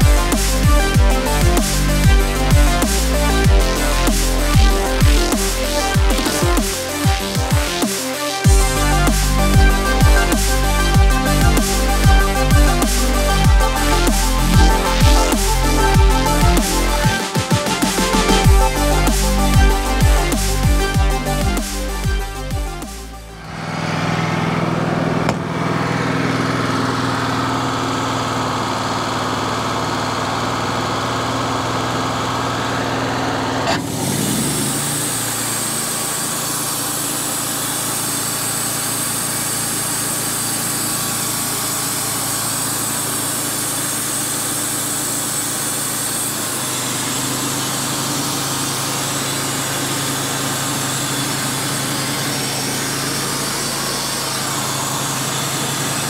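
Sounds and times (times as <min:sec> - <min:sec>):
band sawmill engine running: 0:00.0 - 0:56.0
saw blade cutting hiss: 0:34.0 - 0:56.0.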